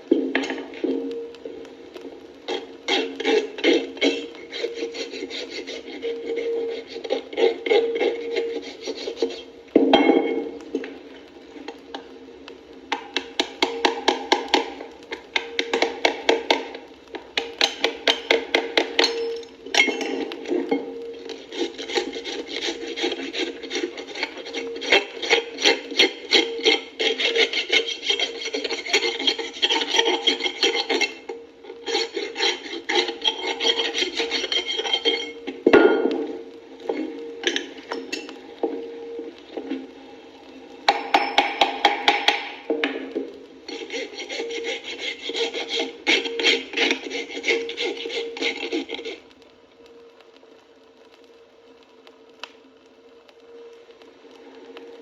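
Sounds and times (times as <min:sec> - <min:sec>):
file rasping back and forth: 0:02.5 - 0:09.5, 0:21.2 - 0:35.5, 0:43.7 - 0:49.2.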